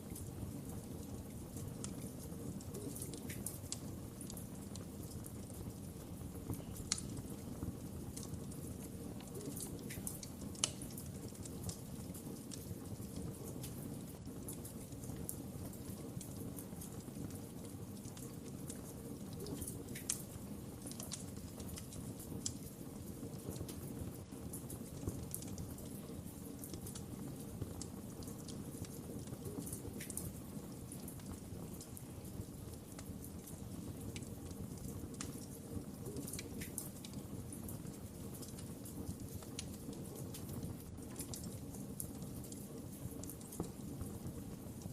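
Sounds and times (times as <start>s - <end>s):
sharp pops and snaps of fire: 0.0s - 44.9s
wood fire crackling: 0.0s - 44.9s.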